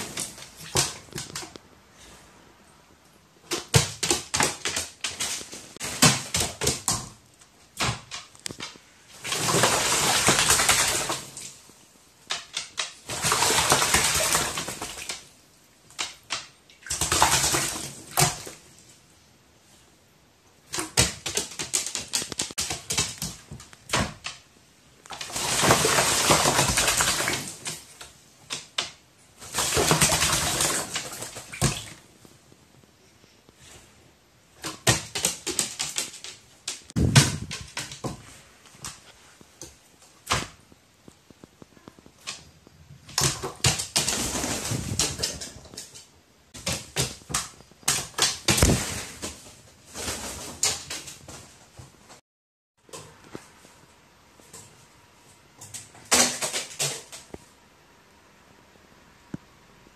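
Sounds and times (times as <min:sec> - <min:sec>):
small taps and clicks: 0:07.8 - 0:08.8, 0:20.9 - 0:24.4
crow splashing in water: 0:09.1 - 0:11.6, 0:12.3 - 0:15.3, 0:15.9 - 0:18.6, 0:25.1 - 0:32.0.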